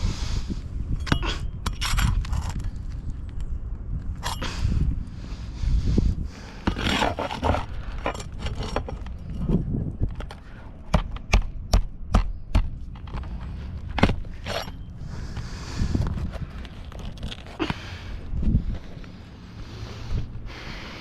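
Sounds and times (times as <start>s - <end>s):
hard objects scraping and knocking: 6.6s - 10.5s.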